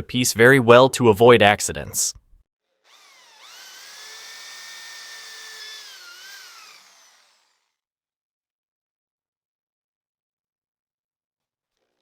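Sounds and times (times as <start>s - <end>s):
electric drill whining: 2.8s - 7.8s.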